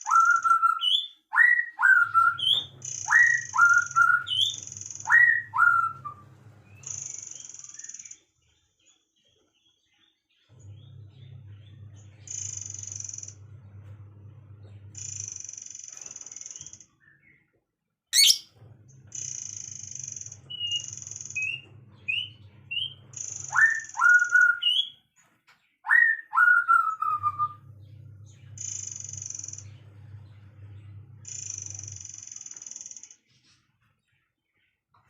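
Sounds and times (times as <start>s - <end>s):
songbirds whistling and chirping: 0.0s - 8.3s, 18.2s - 18.5s, 20.3s - 25.1s, 25.8s - 29.8s.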